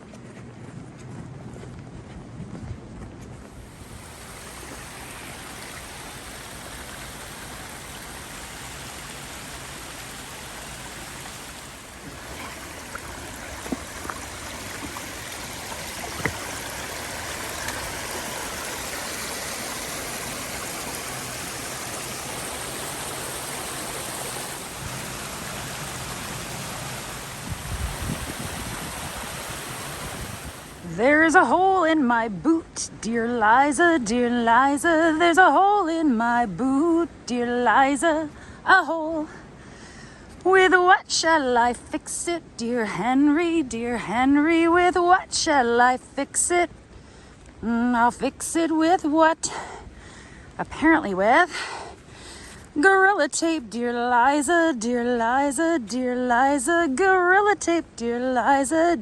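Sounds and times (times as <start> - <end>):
flowing water rushing: 3.5 - 31.6.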